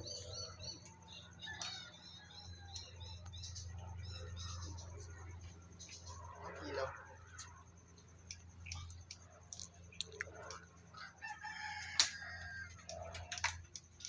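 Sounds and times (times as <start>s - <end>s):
rooster crowing: 10.9s - 13.5s.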